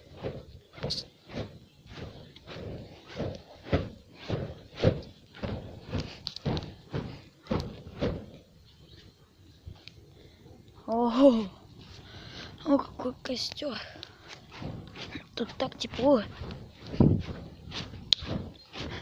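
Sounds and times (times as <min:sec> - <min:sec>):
footsteps with dull thuds: 0:00.0 - 0:08.5, 0:14.1 - 0:19.0.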